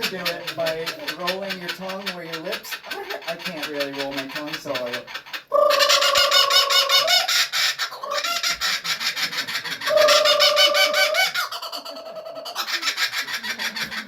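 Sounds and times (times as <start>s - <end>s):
kookaburra cackling laugh: 0.0s - 14.0s
person's lip trill imitation: 5.4s - 7.2s.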